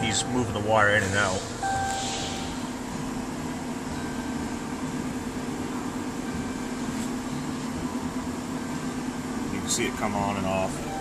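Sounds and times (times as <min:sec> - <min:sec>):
steady mechanical hum: 0:00.0 - 0:11.0.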